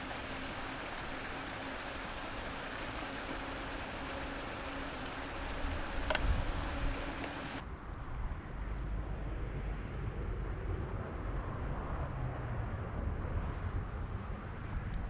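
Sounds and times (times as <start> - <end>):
low outdoor rumble: 0.0 - 7.6.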